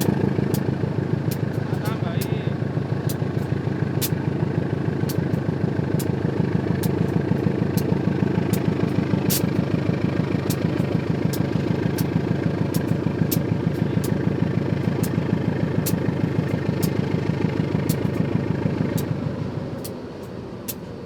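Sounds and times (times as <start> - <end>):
locomotive engine idling: 0.0 - 21.0
sharp clicks: 10.4 - 14.2.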